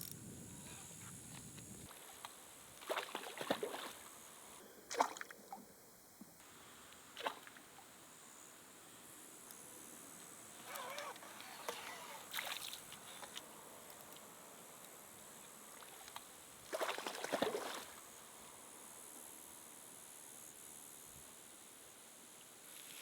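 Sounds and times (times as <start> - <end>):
faint steady hiss: 0.0 - 23.0
water splashing and sloshing: 1.9 - 4.1, 4.9 - 5.6, 11.6 - 13.4, 15.7 - 18.0.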